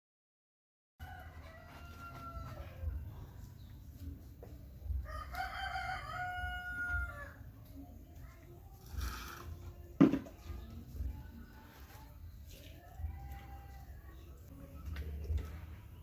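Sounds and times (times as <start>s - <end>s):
rooster crowing: 1.0s - 3.0s, 5.0s - 7.4s.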